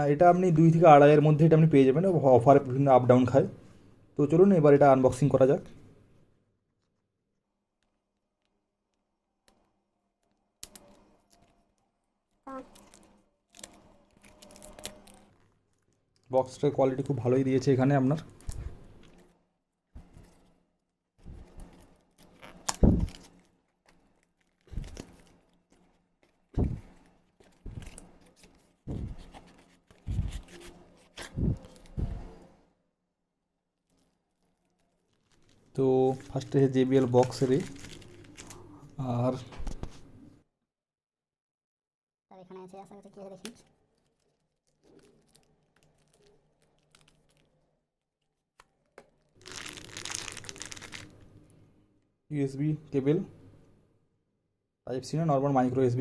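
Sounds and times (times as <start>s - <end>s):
crinkling of wrapping: 6.6s - 32.5s, 33.7s - 40.1s, 42.9s - 51.6s.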